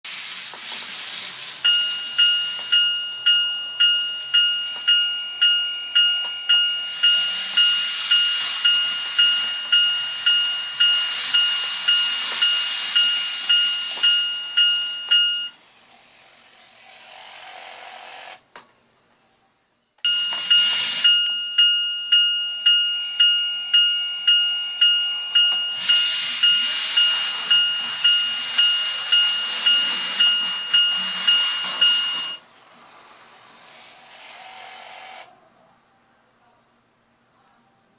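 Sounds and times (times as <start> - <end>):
hiss: 0.1 - 1.7
level crossing warning bell: 1.6 - 15.6, 20.1 - 32.4.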